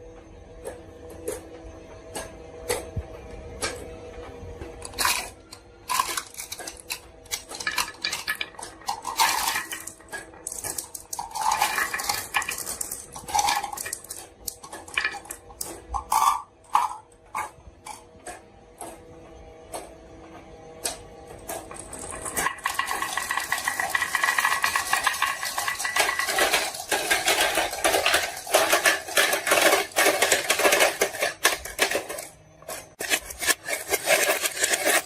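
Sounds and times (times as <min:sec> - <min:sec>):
marbles clacking down a track: 0:04.8 - 0:17.0, 0:21.6 - 0:32.3.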